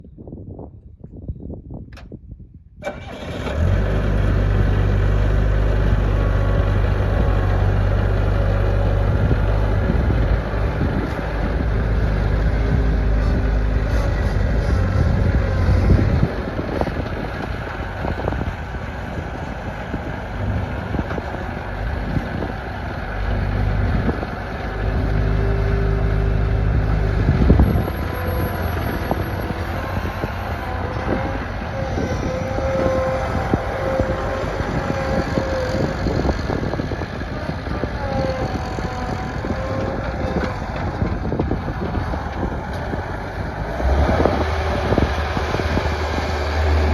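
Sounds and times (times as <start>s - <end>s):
loader diesel engine rumbling: 2.8s - 46.9s.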